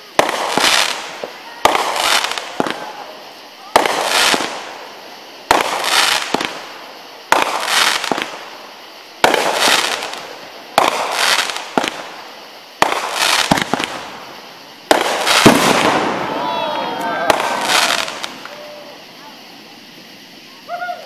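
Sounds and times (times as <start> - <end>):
fireworks bang and hiss: 0.0 - 21.0.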